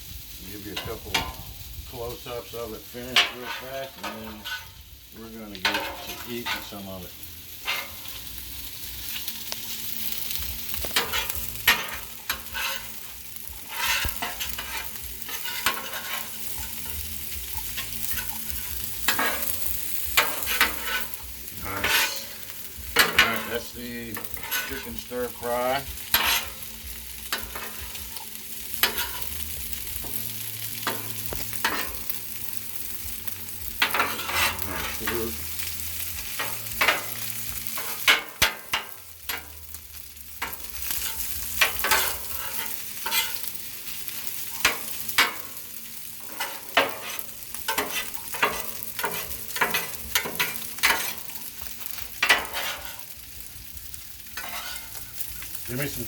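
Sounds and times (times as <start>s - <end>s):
fried rice sizzling on a griddle: 0.0s - 56.0s
spatula scrapes and clicks: 54.4s - 55.0s.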